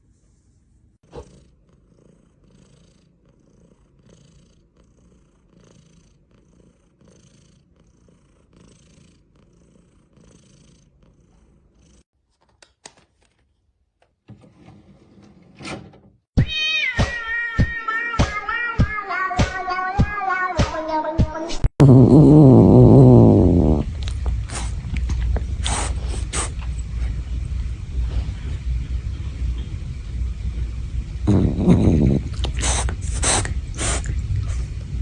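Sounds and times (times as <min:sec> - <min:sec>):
cat purring: 0:01.0 - 0:12.1, 0:17.8 - 0:35.0.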